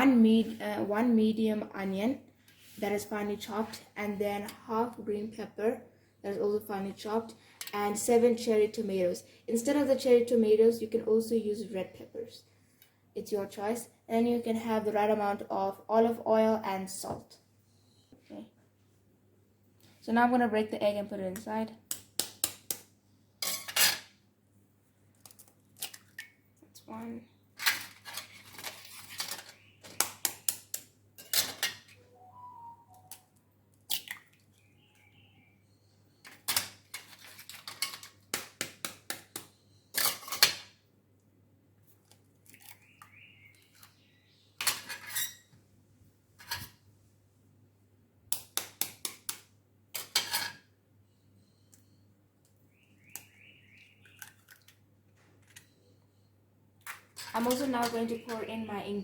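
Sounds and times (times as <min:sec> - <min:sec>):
eggs cracking against a bowl: 0:29.8 - 0:31.7.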